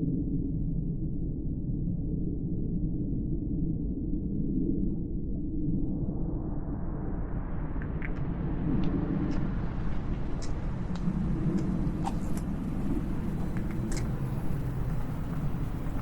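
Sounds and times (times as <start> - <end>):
low outdoor rumble: 5.0 - 16.0.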